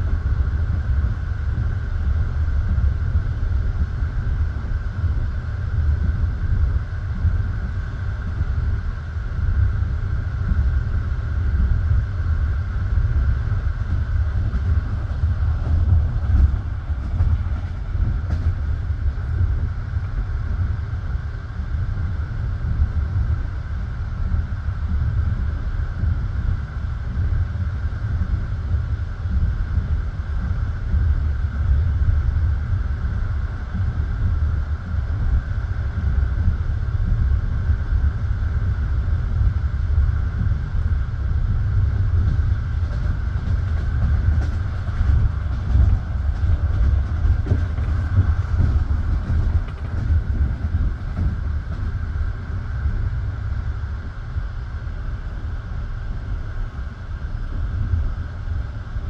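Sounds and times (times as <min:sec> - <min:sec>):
train wheels rumbling on track: 0:00.0 - 0:59.0
wheels clicking over rail joints: 0:42.8 - 0:52.2.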